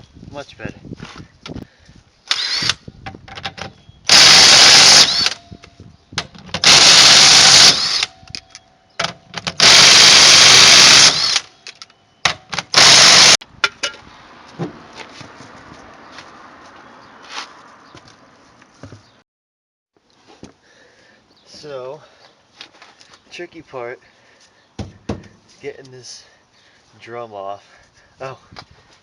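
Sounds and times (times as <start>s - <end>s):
power tool spinning lug nuts: 2.3s - 2.8s, 4.1s - 5.4s, 6.5s - 8.2s, 9.4s - 11.5s, 12.5s - 13.4s.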